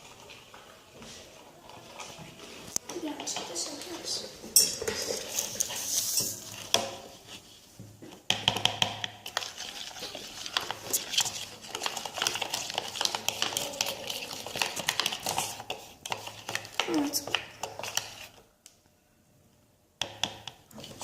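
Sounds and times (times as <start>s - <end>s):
spoon scraping a container: 3.2s - 7.6s, 9.2s - 18.5s.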